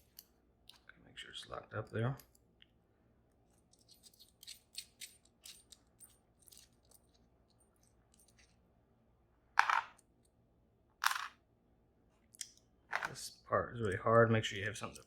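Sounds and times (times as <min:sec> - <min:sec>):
metal lock parts clicking: 0:03.7 - 0:07.2.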